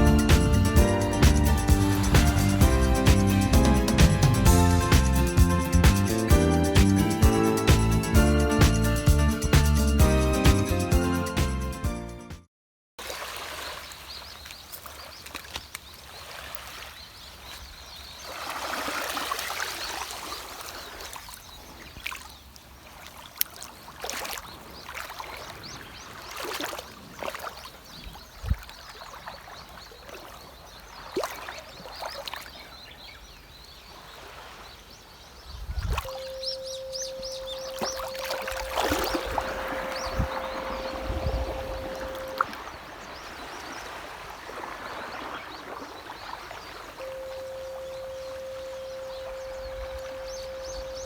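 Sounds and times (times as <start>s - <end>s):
sea water lapping and splashing: 0.0s - 4.5s, 13.0s - 51.0s
small splashes: 13.0s - 33.0s, 35.8s - 36.4s, 37.3s - 50.6s
steady pure tone: 36.1s - 42.6s, 47.0s - 51.0s.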